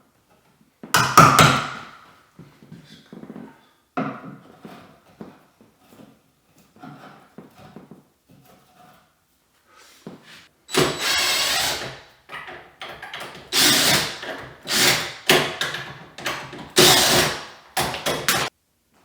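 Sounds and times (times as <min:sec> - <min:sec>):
power tool bursts: 0:10.7 - 0:12.0, 0:13.0 - 0:18.5.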